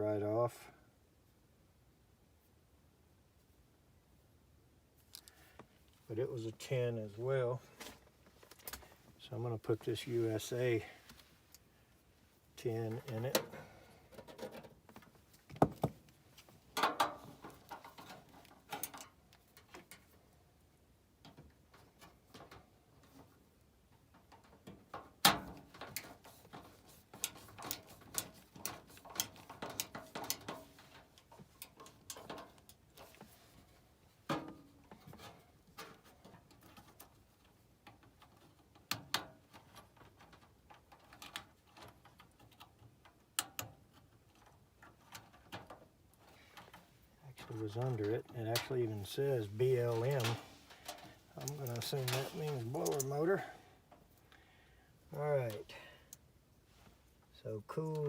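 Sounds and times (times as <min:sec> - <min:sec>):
hands clicking and tapping on parts: 0:24.2 - 0:33.2.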